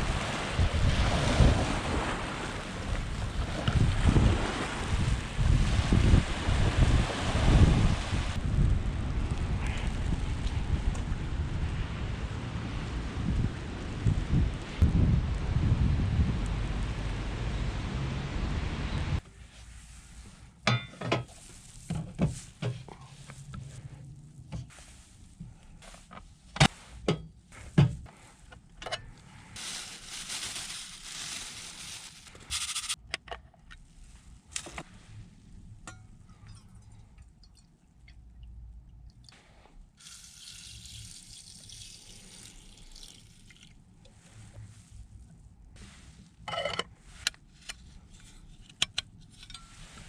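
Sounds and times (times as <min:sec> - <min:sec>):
water pouring: 0:40.0 - 0:43.8.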